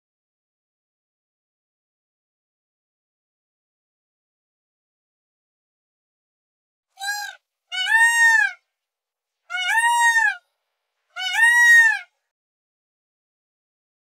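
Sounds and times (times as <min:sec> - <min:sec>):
peacock calling: 0:07.0 - 0:08.6, 0:09.5 - 0:10.4, 0:11.2 - 0:12.1.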